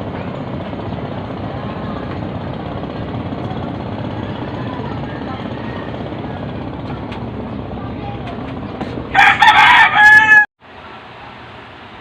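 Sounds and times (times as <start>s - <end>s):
low background hum: 0.0s - 12.0s
rooster crowing: 5.1s - 6.5s, 9.1s - 10.5s.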